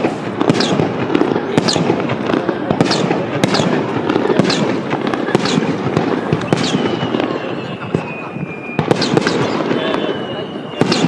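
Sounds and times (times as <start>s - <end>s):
fireworks bursting and crackling: 0.0s - 11.0s
high falling whistle: 6.4s - 11.0s.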